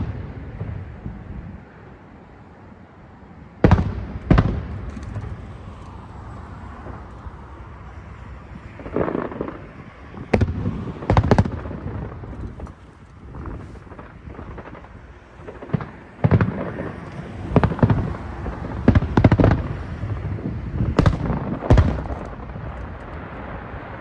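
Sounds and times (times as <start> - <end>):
firework shells bursting: 3.7 - 18.1, 20.9 - 23.7.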